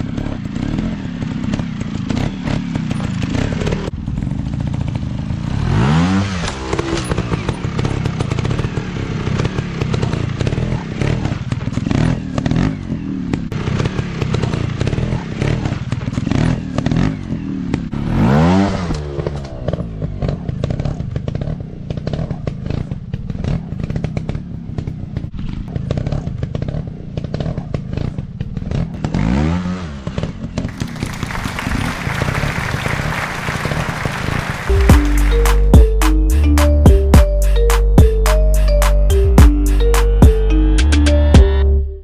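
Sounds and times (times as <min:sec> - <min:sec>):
motorcycle engines knocking: 0:00.0 - 0:40.7.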